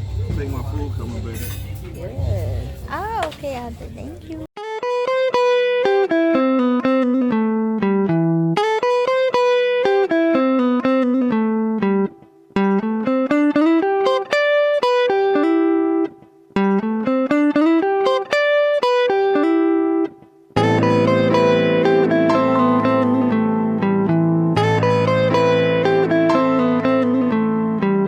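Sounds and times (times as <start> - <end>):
plucked guitar melody: 0.0 - 28.0.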